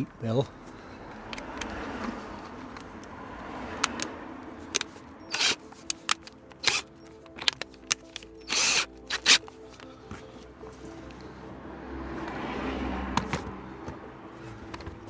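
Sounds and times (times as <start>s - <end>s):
background music: 0.0s - 15.0s
tools clicking and knocking: 3.8s - 4.1s, 4.7s - 10.2s.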